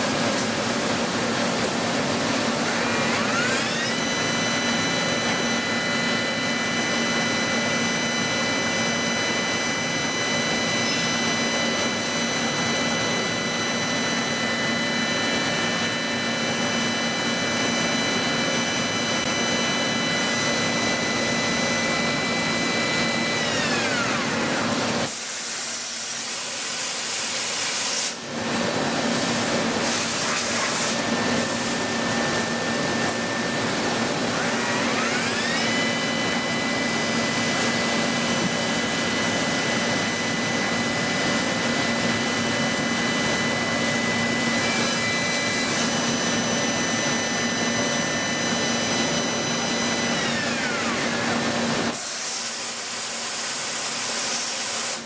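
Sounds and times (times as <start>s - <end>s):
machine spindle whining: 0.1s - 55.0s
machine hum: 28.2s - 52.0s.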